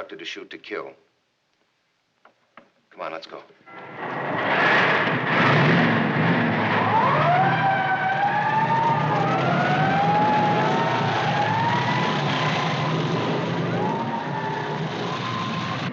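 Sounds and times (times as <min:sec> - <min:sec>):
road noise: 0:03.7 - 0:15.9
vehicle engine: 0:03.7 - 0:15.9
siren wailing: 0:05.5 - 0:15.9.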